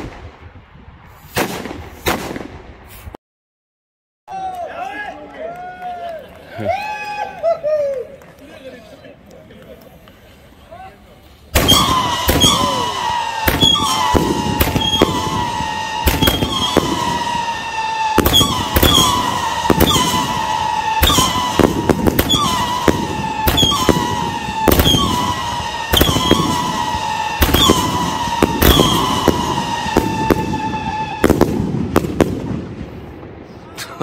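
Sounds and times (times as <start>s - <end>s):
whistling firework shots: 0.0s - 3.2s, 11.5s - 33.6s.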